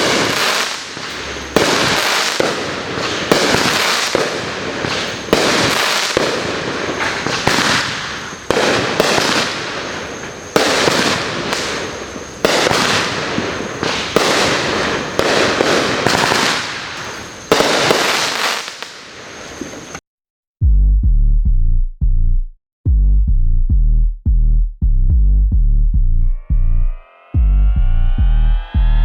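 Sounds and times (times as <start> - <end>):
fireworks bangs and crackle: 0.0 - 20.0
electronic music with heavy bass: 20.6 - 29.0.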